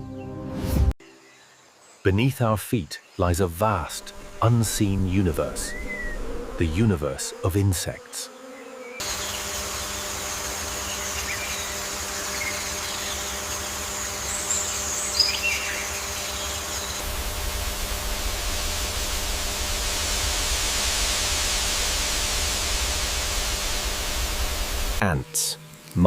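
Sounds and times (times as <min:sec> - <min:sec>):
steady hiss: 0:01.8 - 0:08.2, 0:09.0 - 0:26.0
low hum: 0:03.6 - 0:07.0, 0:09.1 - 0:25.3
bird chirps: 0:05.6 - 0:06.2, 0:14.0 - 0:17.0.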